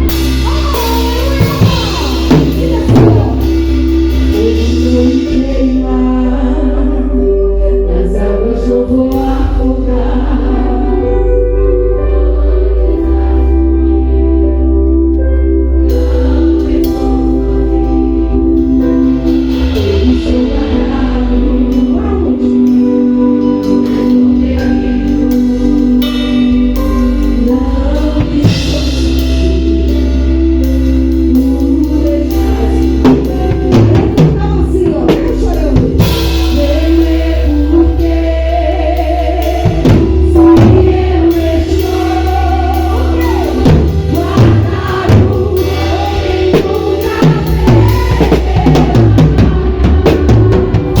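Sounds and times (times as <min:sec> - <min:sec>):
drum kit hits: 0:00.0 - 0:05.5, 0:39.6 - 0:51.0
song with steady bass: 0:00.0 - 0:51.0.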